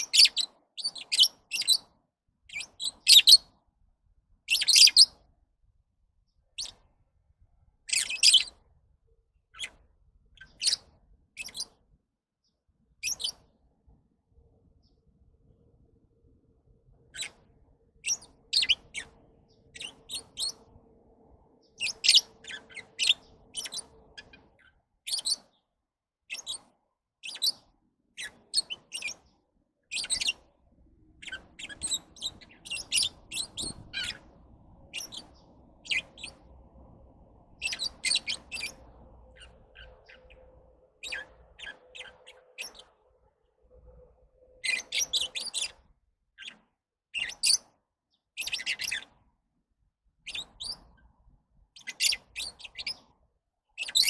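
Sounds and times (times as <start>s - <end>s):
birds chirping: 0.0s - 3.5s, 4.5s - 5.2s, 7.8s - 8.7s, 9.3s - 11.8s, 12.4s - 13.7s, 16.6s - 25.7s, 26.3s - 46.6s, 47.2s - 49.2s, 50.2s - 51.1s, 51.8s - 53.2s, 53.8s - 54.0s.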